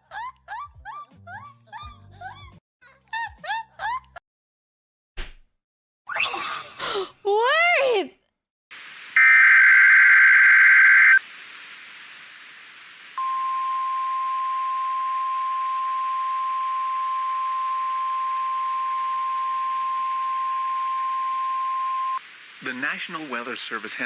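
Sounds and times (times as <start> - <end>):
radio hiss: 8.8 - 13.2, 22.2 - 24.0.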